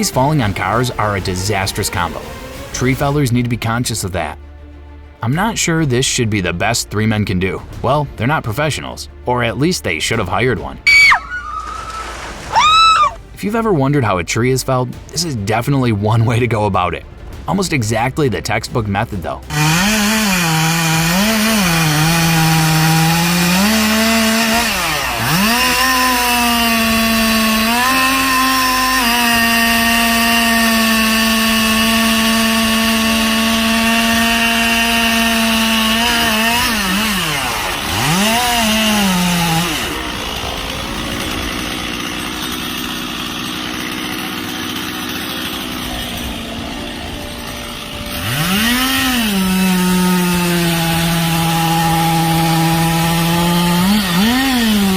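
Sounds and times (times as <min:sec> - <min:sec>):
chainsaw running at high revs: 0:00.0 - 0:03.2, 0:19.4 - 0:54.9.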